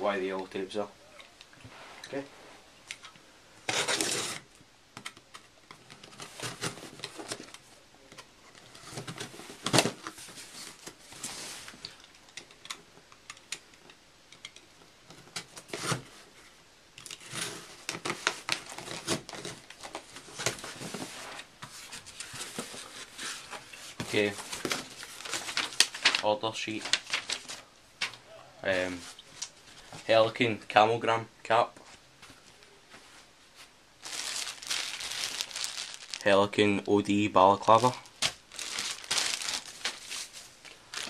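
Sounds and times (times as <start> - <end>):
packaging rustling and crinkling: 3.7 - 4.5, 5.3 - 7.7, 8.5 - 12.8, 17.0 - 28.2, 34.0 - 41.0.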